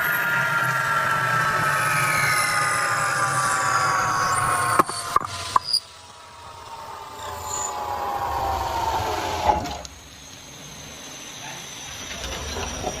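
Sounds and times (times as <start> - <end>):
power tool working wood: 7.0 - 9.9.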